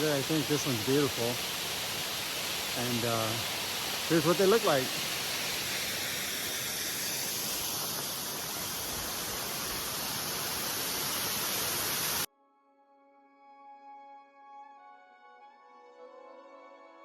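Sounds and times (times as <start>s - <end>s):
waterfall rushing: 0.0s - 12.3s.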